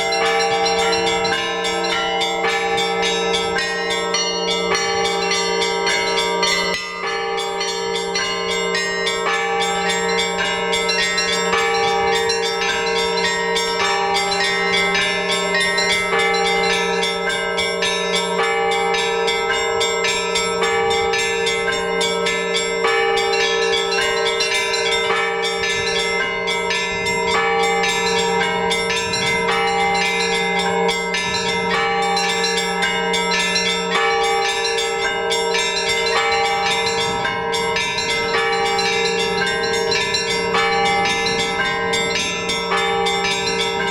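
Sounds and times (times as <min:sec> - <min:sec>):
large bells humming: 0:00.0 - 0:43.9
small church bells striking: 0:00.0 - 0:43.9.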